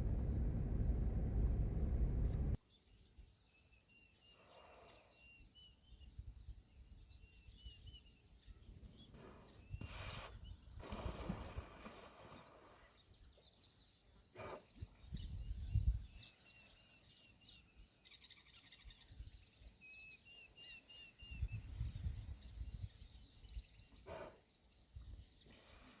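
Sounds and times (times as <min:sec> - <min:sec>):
wind gusts on microphone: 0:15.0 - 0:16.3, 0:21.2 - 0:23.6.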